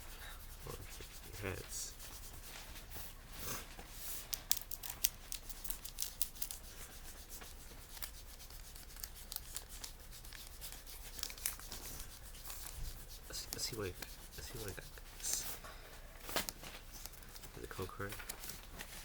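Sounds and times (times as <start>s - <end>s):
foil wrapper crinkling: 4.2s - 6.7s, 7.9s - 12.7s.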